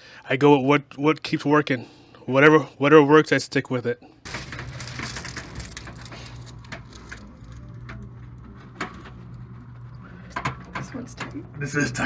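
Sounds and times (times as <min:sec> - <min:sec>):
fabric rustling and crackling: 0:04.2 - 0:07.5.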